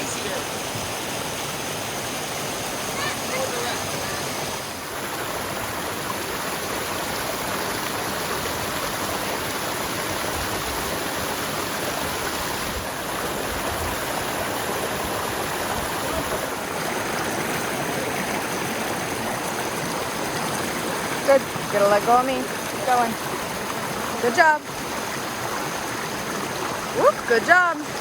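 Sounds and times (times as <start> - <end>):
brook flowing over rocks: 0.0 - 28.0.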